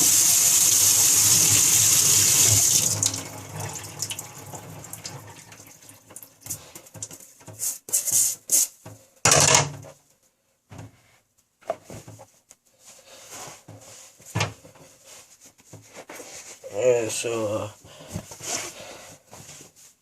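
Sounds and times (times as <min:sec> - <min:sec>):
sneaker rubbing and scraping: 0:11.6 - 0:16.7.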